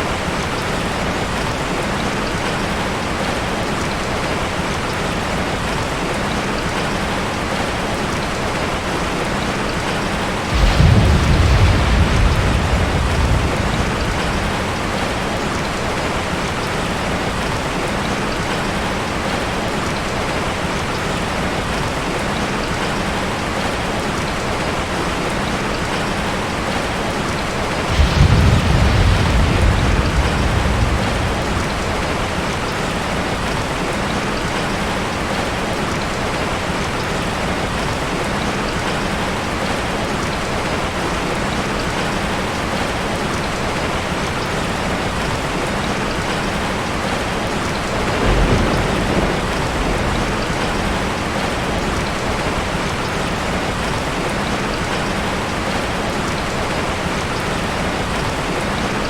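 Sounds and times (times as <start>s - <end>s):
steady rain falling: 0.0s - 59.0s
thunder rumbling: 9.9s - 18.5s, 27.8s - 35.6s, 46.1s - 54.9s.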